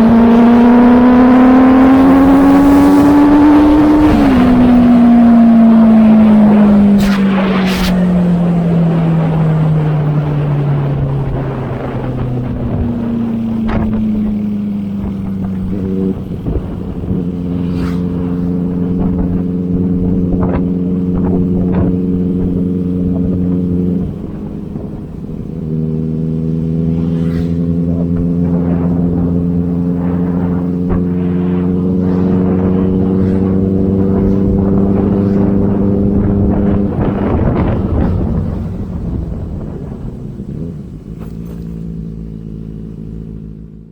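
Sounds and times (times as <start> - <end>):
motorcycle engine revving up: 0.0 - 43.7.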